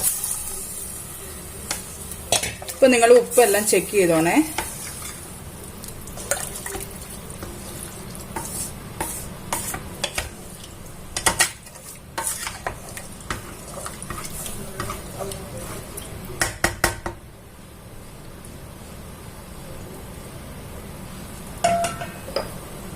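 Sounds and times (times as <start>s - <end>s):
spoon scraping and knocking pot: 8.3s - 10.4s, 11.1s - 15.8s, 21.6s - 22.6s.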